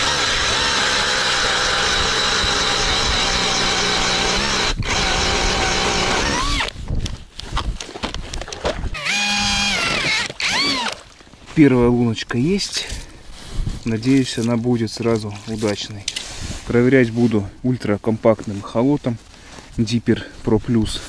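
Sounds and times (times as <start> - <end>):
drill boring through ice: 0.0 - 6.8, 8.9 - 11.0.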